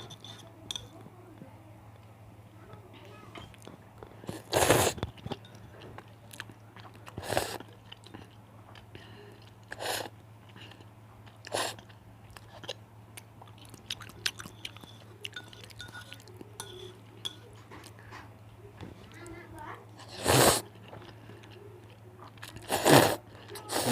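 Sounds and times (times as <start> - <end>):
faint low hum: 0.0 - 23.9
chewing noodles: 3.5 - 18.1, 20.0 - 23.9.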